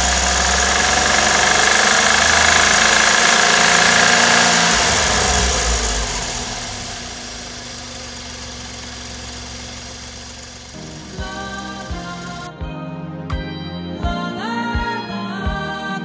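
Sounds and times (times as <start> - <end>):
car engine running with abnormal noise: 0.0 - 12.5.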